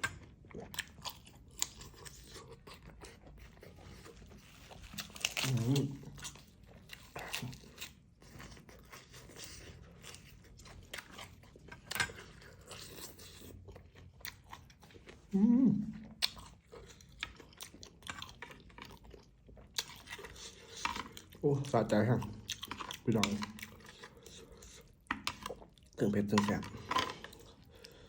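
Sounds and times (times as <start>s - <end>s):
person chewing with wet smacking: 0.0s - 28.0s
person murmuring: 15.3s - 16.0s.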